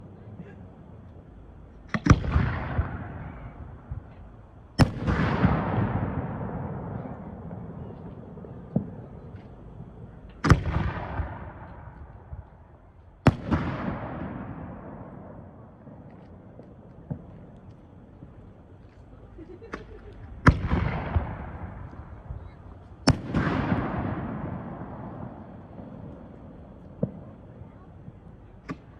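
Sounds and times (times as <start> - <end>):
fireworks bangs: 0.0 - 28.9.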